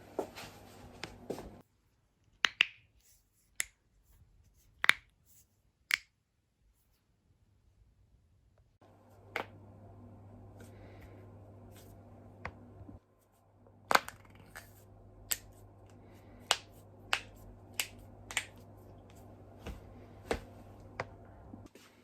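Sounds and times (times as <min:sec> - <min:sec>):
faint low hum: 0:06.6 - 0:22.0.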